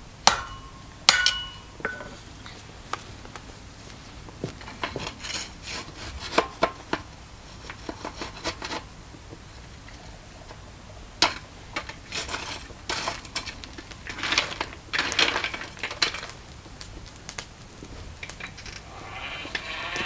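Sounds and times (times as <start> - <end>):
tongs clinking on metal: 11.2 - 16.4
whirring: 17.8 - 20.0
metal scraping: 17.9 - 20.0.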